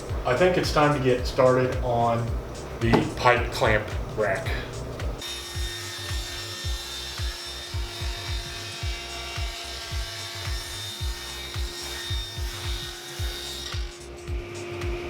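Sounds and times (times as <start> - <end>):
steady hum: 0.0 - 5.2
background music with beat: 0.0 - 15.0.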